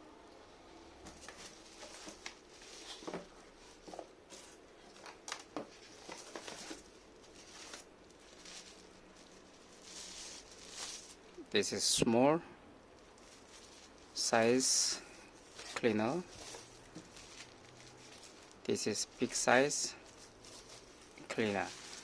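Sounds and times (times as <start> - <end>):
handling clicks and rustling: 1.1 - 11.2, 15.4 - 22.0.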